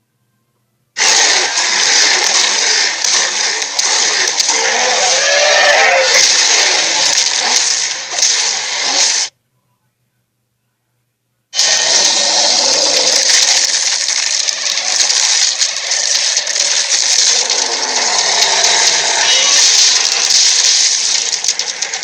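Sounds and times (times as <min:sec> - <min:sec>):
harsh rasping creature buzz: 0:01.0 - 0:09.3, 0:11.6 - 0:22.0.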